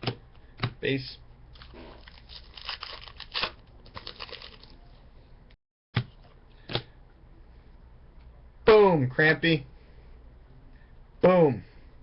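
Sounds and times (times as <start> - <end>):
wrapper crinkling: 1.6 - 4.8.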